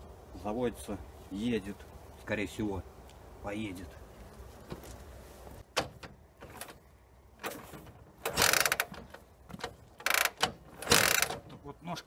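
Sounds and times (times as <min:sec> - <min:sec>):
metal ratchet clicking: 0:08.3 - 0:09.0, 0:10.0 - 0:11.4.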